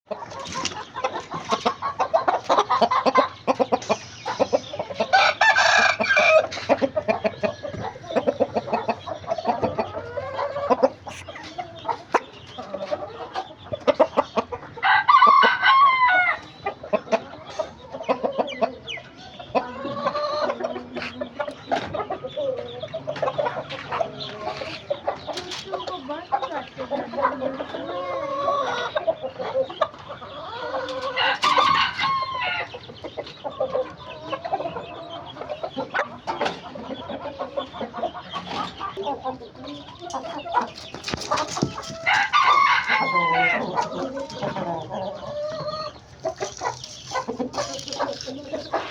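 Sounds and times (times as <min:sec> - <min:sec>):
chickens clucking: 0:00.1 - 0:48.9
rooster crowing: 0:05.1 - 0:06.5, 0:14.8 - 0:16.4, 0:30.6 - 0:32.7, 0:41.7 - 0:44.2.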